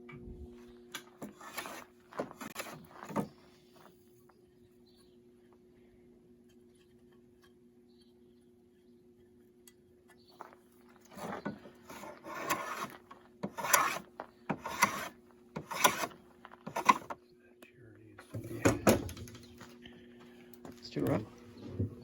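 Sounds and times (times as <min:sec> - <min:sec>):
abrasive scraping wood: 0:01.2 - 0:03.8, 0:10.9 - 0:17.2.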